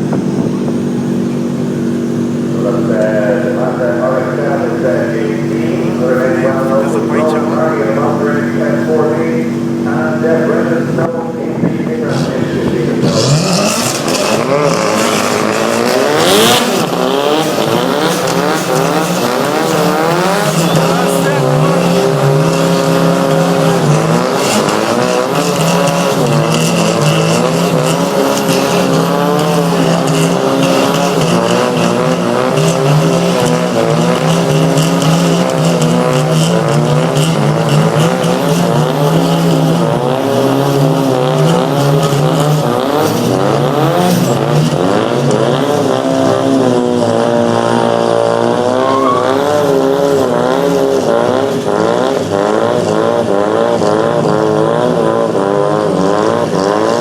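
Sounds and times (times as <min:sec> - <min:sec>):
car engines revving hard: 0:00.0 - 0:57.0
tyres squealing: 0:18.4 - 0:46.5, 0:48.2 - 0:50.4.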